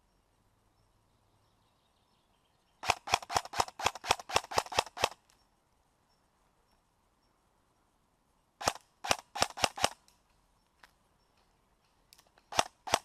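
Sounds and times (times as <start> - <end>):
airsoft gun shots: 2.8 - 5.2, 8.6 - 10.0.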